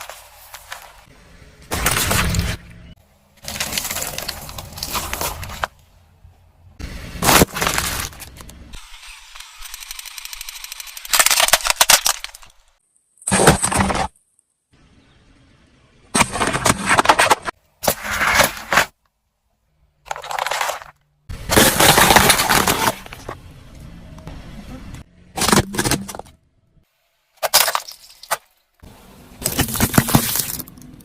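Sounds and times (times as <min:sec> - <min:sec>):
plastic toys crunching under tyre: 0:01.7 - 0:02.7, 0:03.4 - 0:05.8, 0:07.2 - 0:14.2, 0:16.1 - 0:19.0, 0:20.0 - 0:23.4, 0:29.4 - 0:31.0.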